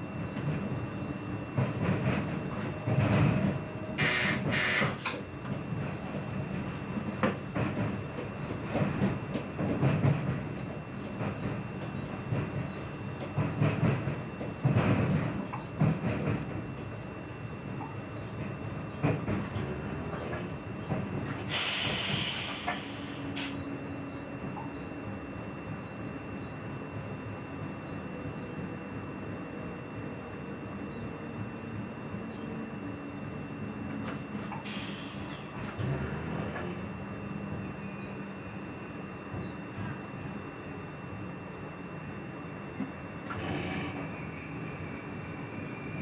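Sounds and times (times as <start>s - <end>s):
train rumble: 0.0s - 46.0s
short air hisses: 21.5s - 23.6s, 34.6s - 35.3s.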